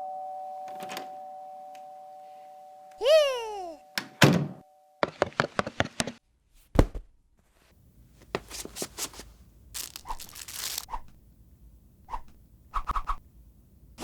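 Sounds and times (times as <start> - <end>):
thump: 6.8 - 7.1
packaging tearing: 8.4 - 11.2
packaging clicks: 9.8 - 11.1.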